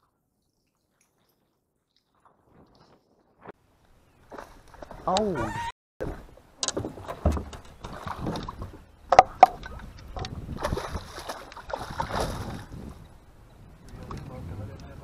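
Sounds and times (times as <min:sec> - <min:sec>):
water sloshing and splashing: 0:04.2 - 0:13.2
knocks and clatter on boat: 0:06.0 - 0:13.0, 0:13.9 - 0:15.0.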